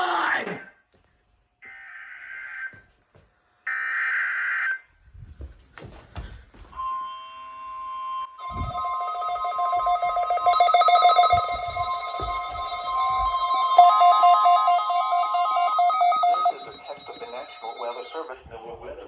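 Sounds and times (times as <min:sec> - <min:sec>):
steady warning alarm tone: 0:06.8 - 0:19.0
pulsing multi-tone alert: 0:08.4 - 0:18.3.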